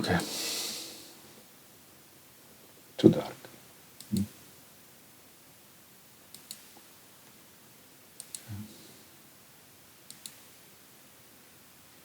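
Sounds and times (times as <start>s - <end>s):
faint computer mouse clicks: 6.3s - 6.9s, 8.2s - 8.5s, 10.1s - 10.4s.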